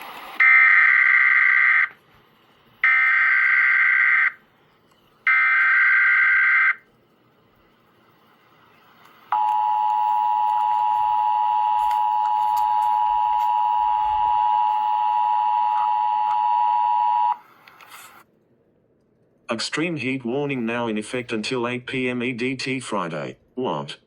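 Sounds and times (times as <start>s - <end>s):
two-tone alarm: 0.4s - 2.0s, 2.8s - 4.4s, 5.3s - 6.8s, 9.3s - 17.4s.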